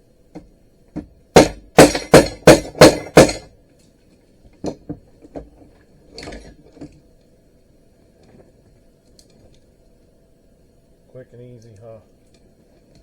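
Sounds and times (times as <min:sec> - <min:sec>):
hammer blows on plastic: 0:01.4 - 0:03.5.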